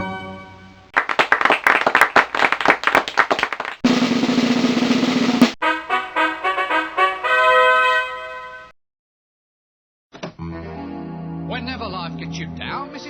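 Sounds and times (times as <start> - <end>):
snare drum roll: 1.0 - 5.6
short brass notes: 5.6 - 8.7.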